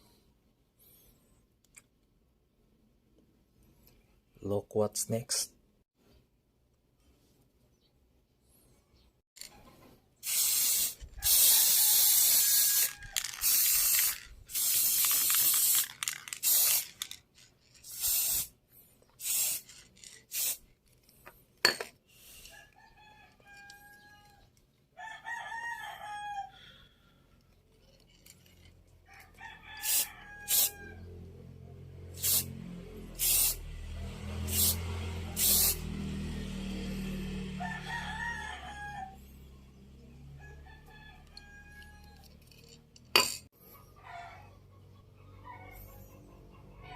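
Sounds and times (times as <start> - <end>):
rooster crowing: 11.2 - 14.2, 22.4 - 26.9, 29.1 - 31.1, 35.4 - 35.9, 36.7 - 39.4, 40.3 - 42.4.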